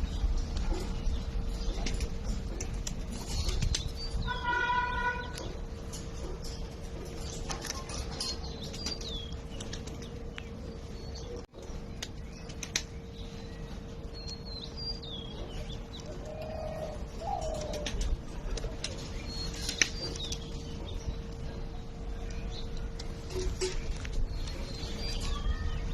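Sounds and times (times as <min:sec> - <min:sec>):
small birds chirping: 0:00.0 - 0:25.9
pigeon cooing: 0:15.4 - 0:20.3.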